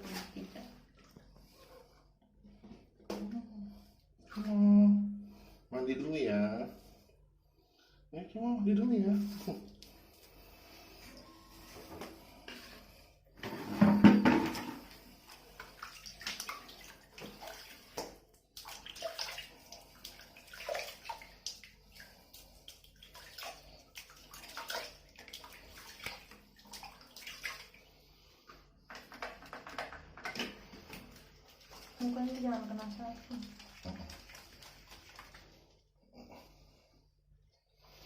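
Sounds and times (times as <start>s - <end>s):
bath water splashing: 0.0s - 1.9s, 9.2s - 36.7s.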